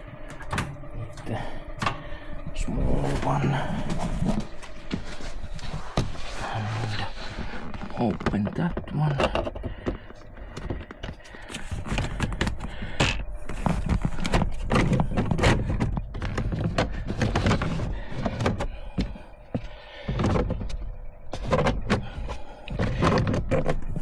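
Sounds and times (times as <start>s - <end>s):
rustling: 0.0s - 9.0s.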